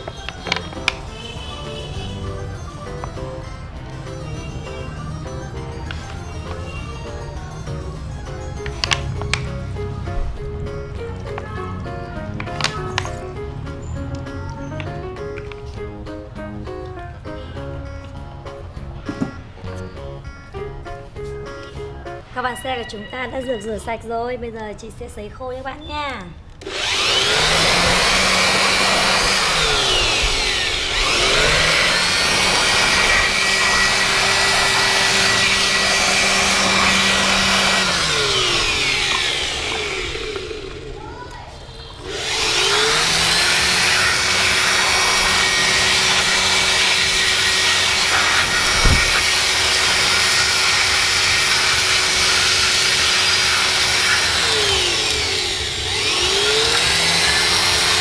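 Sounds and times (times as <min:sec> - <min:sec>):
hair dryer blowing: 0:26.6 - 0:41.1, 0:42.0 - 0:58.0.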